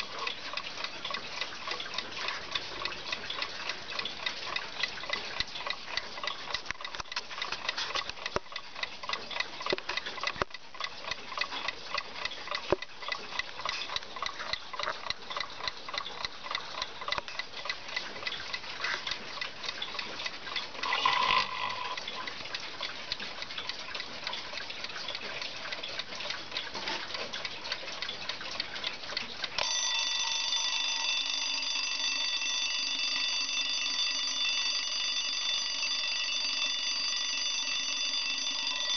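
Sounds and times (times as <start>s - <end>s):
mechanical alarm clock ticking: 0.0s - 38.9s
alarm bell ringing: 20.8s - 22.0s, 29.6s - 38.9s.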